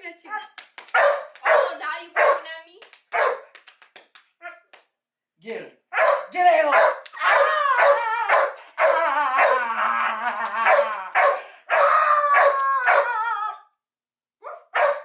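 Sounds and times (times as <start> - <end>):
dog barking and howling: 1.0 - 2.4, 3.2 - 3.4, 5.9 - 13.7, 14.5 - 15.0.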